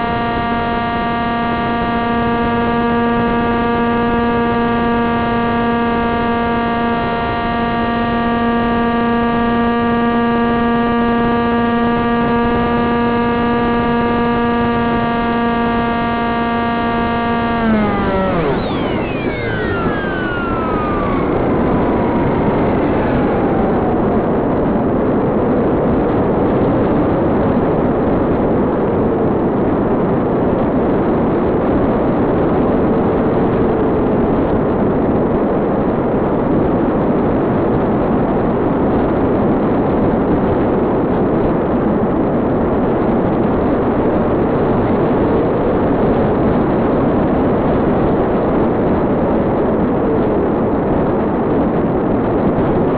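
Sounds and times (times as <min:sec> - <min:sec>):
electric motor and propeller: 0:00.0 - 0:25.8.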